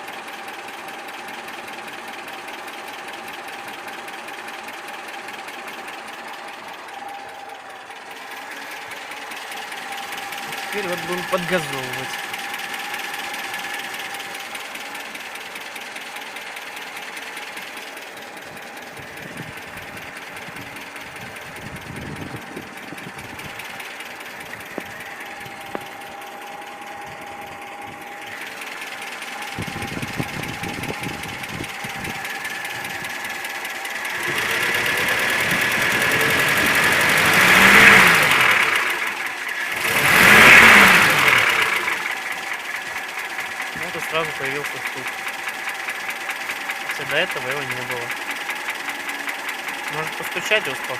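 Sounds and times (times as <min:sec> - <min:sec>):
engine knocking: 0:00.0 - 0:50.9
petrol engine idling: 0:00.0 - 0:50.9
engine revving: 0:08.2 - 0:14.7, 0:18.8 - 0:50.9.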